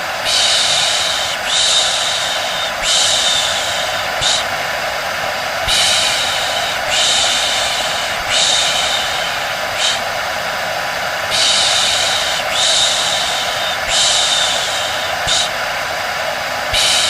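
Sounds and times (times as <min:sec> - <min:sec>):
hair dryer running: 0:00.0 - 0:17.0
person shushing: 0:00.2 - 0:04.5, 0:05.7 - 0:10.1, 0:11.3 - 0:15.6.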